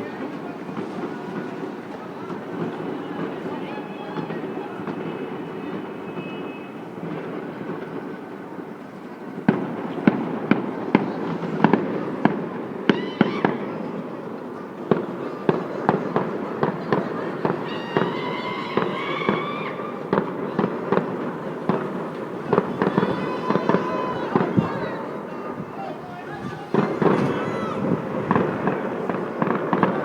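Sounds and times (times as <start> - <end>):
fireworks sharp bangs: 0.0 - 30.0
rumble of distant fireworks: 0.0 - 30.0.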